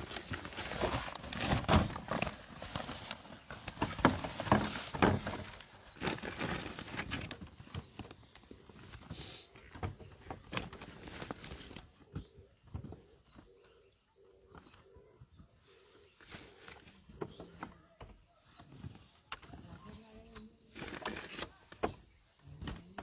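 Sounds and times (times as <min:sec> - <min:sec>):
knocks and rustles: 0:00.0 - 0:13.4.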